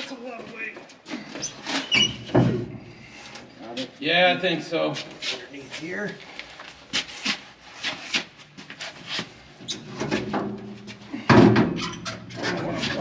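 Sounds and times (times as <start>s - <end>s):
metal plate scraping and knocking: 9.6s - 13.0s.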